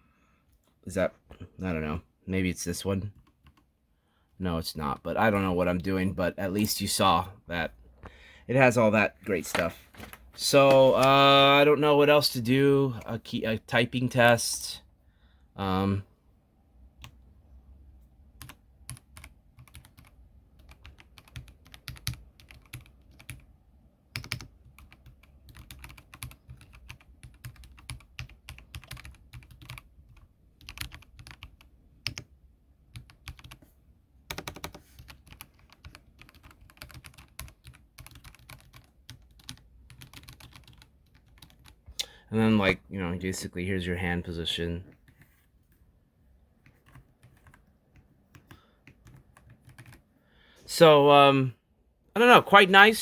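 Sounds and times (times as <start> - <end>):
mechanical keyboard typing: 18.4 - 23.4, 24.1 - 32.3, 32.9 - 33.6, 34.3 - 41.8, 46.6 - 50.0.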